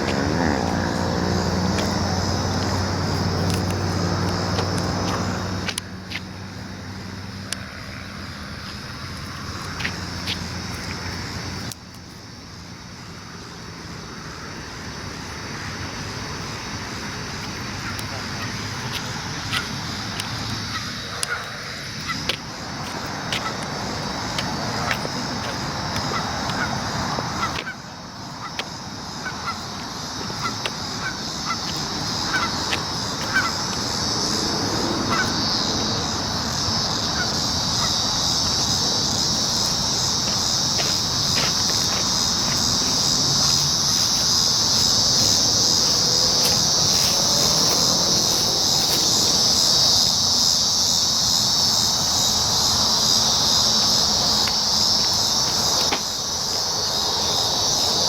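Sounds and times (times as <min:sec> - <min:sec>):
short calls: 0:00.0 - 0:05.8, 0:17.8 - 0:56.7
cicadas buzzing: 0:00.0 - 0:58.0.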